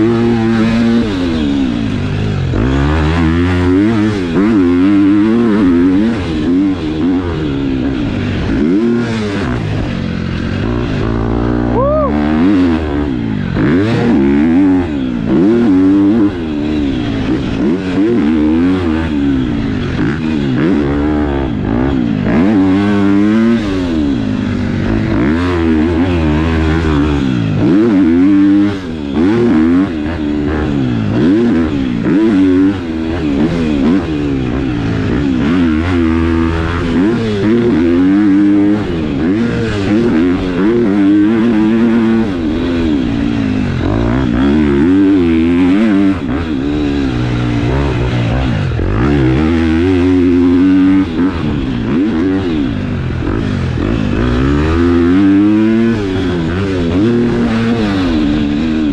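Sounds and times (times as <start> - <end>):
motocross bike engine revving: 0.0 - 58.9.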